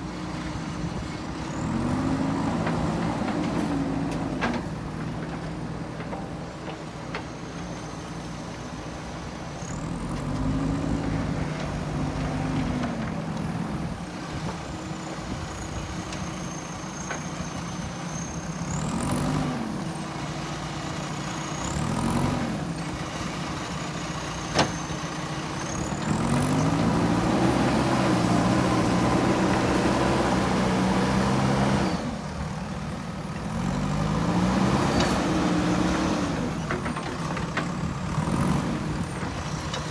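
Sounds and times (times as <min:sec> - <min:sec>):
diesel engine revving: 0:00.2 - 0:04.5, 0:09.7 - 0:14.8, 0:17.5 - 0:39.9.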